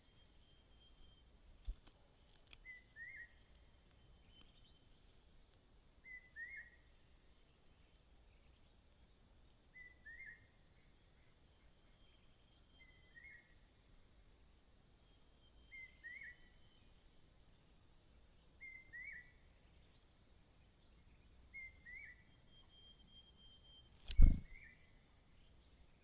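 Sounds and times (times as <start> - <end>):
bird chirping: 24.0 - 24.6.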